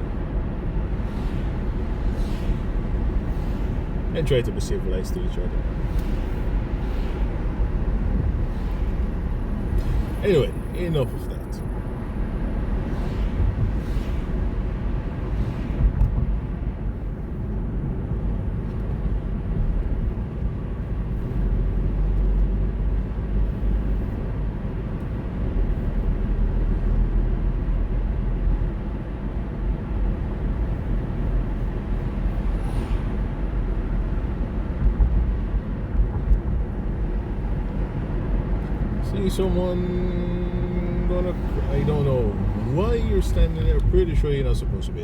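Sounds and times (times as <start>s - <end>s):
car engine and tyre rumble: 0.0s - 45.0s.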